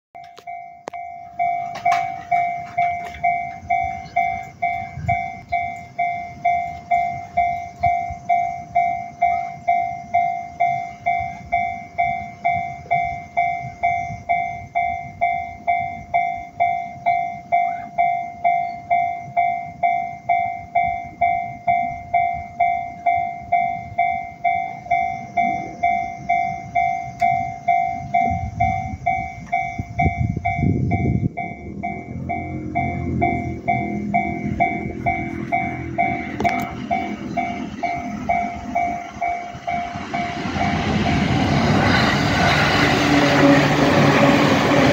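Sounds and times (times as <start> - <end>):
level crossing bell ringing: 0.2 - 41.6
low rumble: 21.2 - 44.9.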